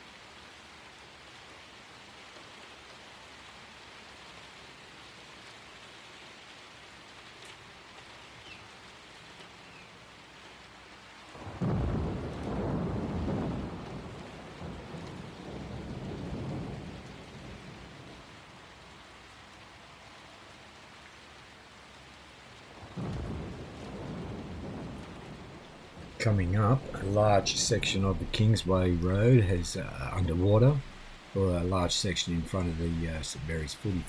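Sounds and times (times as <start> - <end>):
rain hiss: 0.0 - 34.0
thunder rumbling: 11.4 - 18.4, 22.8 - 34.0.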